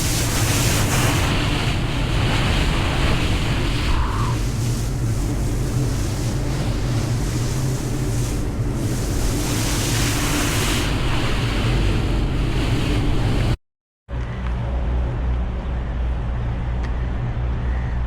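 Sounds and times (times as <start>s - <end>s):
speedboat engine running: 0.0s - 13.6s
water rushing past hull: 0.0s - 13.6s
wind buffeting microphone: 0.0s - 13.6s.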